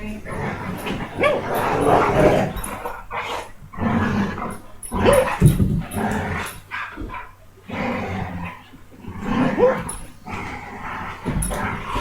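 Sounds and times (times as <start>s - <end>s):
dog vocalizing: 0.0s - 3.6s, 4.2s - 7.5s, 8.2s - 12.0s.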